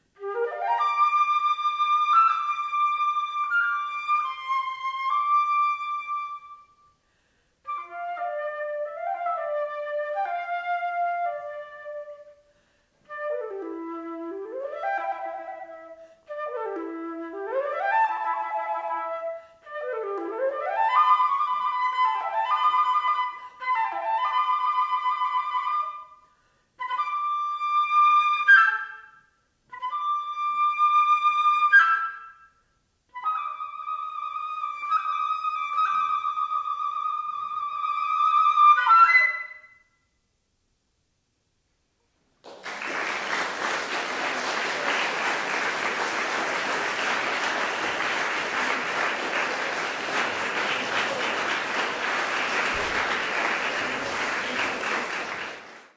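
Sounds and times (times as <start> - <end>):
solo flute playing: 0.0 - 40.1.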